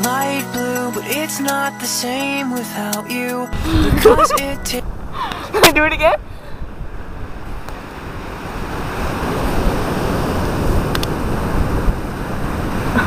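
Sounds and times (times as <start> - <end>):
ocean surf washing onto beach: 3.6 - 13.0
wind rumbling on microphone: 3.6 - 13.0.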